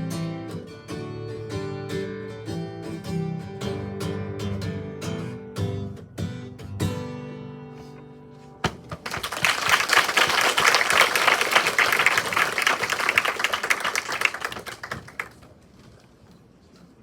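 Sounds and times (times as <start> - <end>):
audience applauding: 9.0 - 15.5.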